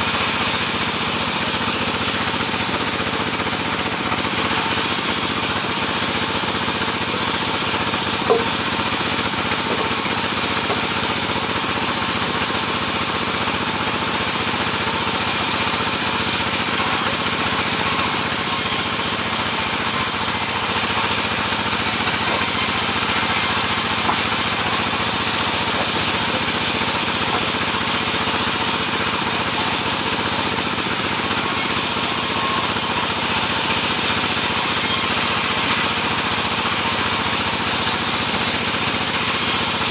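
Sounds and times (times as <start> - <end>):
sawmill sawing wood: 0.0 - 39.9
brief knock: 8.3 - 8.6.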